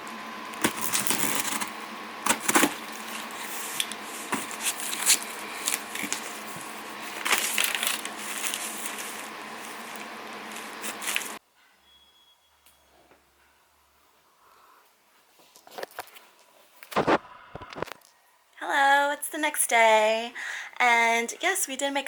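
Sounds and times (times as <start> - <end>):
steady background hum: 0.0 - 11.4, 13.1 - 22.0
packaging crinkling and rustling: 0.5 - 11.4, 15.5 - 18.1.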